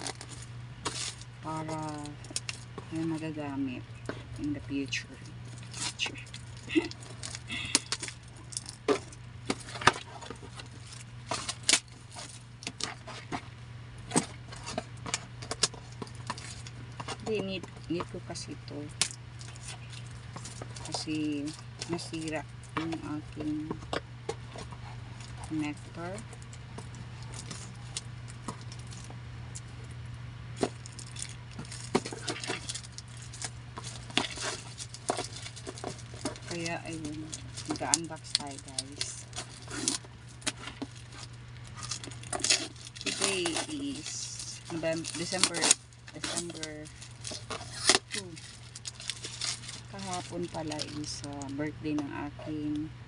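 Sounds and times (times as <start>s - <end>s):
small objects clicking and rattling: 0.0s - 3.3s, 4.0s - 13.4s, 14.1s - 29.9s, 30.5s - 51.6s
package being handled and opened: 0.0s - 3.4s, 4.0s - 51.6s
steady low hum: 0.0s - 53.0s.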